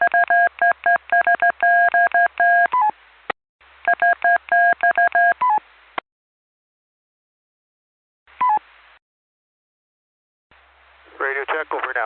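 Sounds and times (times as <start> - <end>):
morse code beeps over radio: 0.0 - 2.9, 3.9 - 5.6.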